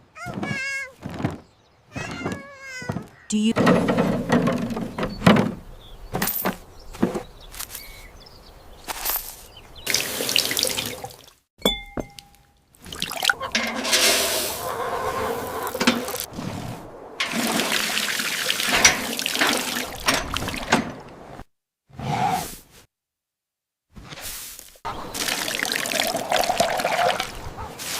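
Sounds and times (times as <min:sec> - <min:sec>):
water running and pouring: 0:09.2 - 0:11.4, 0:12.8 - 0:21.1, 0:24.9 - 0:27.4.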